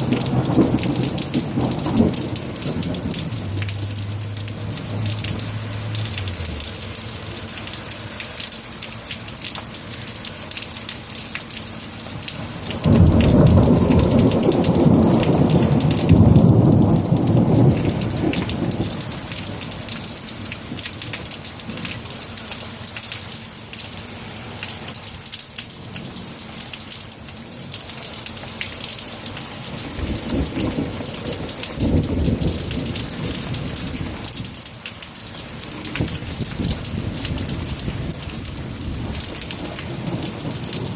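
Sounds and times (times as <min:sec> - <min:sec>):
thunder rumbling: 0:00.0 - 0:07.5, 0:12.7 - 0:19.6, 0:35.8 - 0:40.9
steady rain falling: 0:00.0 - 0:40.9.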